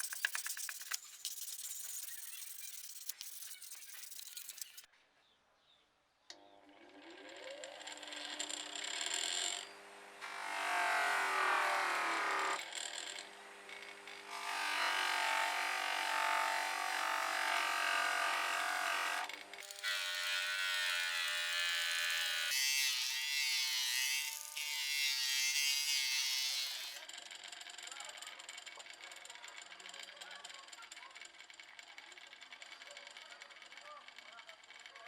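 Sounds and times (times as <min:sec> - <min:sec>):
electric power tool whining: 0:06.6 - 0:27.0.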